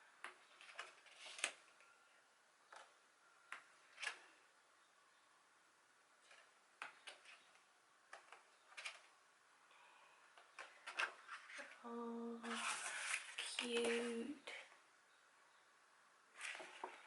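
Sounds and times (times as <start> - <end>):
pages rustling and tapping: 0.2 - 1.9, 2.7 - 4.3, 6.2 - 9.2, 10.4 - 11.8, 12.4 - 14.2, 16.4 - 17.0.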